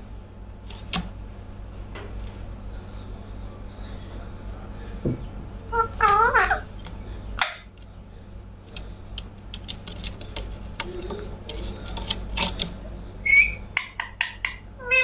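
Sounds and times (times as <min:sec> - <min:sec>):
parakeet squawk: 0:05.7 - 0:06.6, 0:14.2 - 0:15.0.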